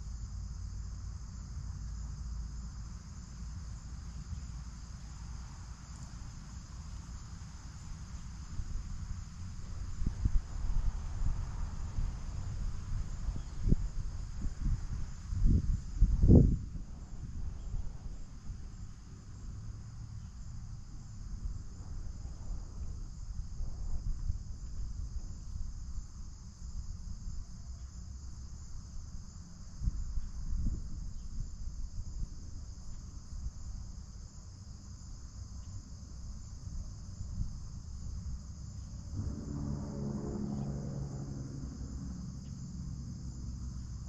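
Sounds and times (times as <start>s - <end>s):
insects chirring: 0.0s - 44.0s
low rumble: 39.0s - 44.0s.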